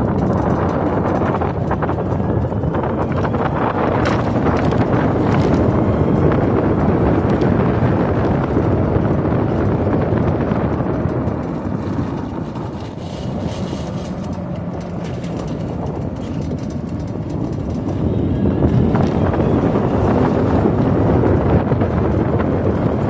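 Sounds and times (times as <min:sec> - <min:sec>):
electric vehicle rumble: 0:00.0 - 0:23.0
wind buffeting microphone: 0:00.0 - 0:23.0.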